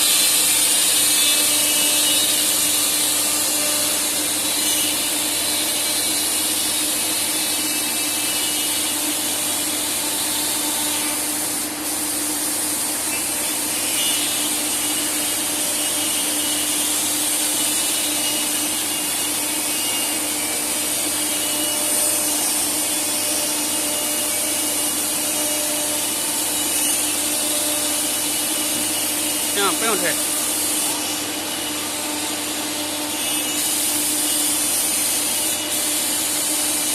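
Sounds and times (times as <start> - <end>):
wood router machine humming: 0.0 - 6.4, 18.0 - 33.6.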